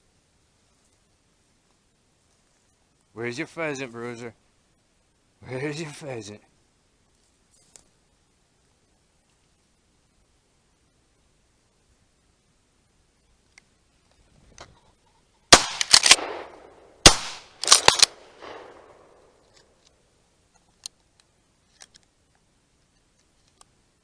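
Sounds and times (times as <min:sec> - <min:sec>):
shotgun blasts with echo: 0:15.5 - 0:19.4.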